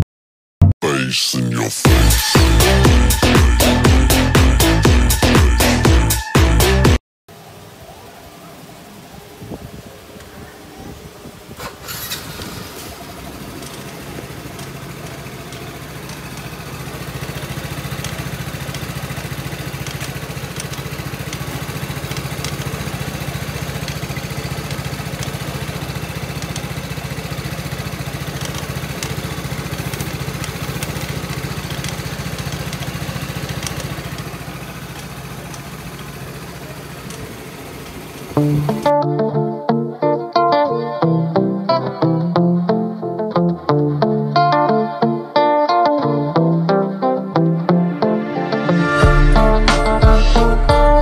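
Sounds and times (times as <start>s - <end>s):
scooter engine running: 1.9s - 39.3s.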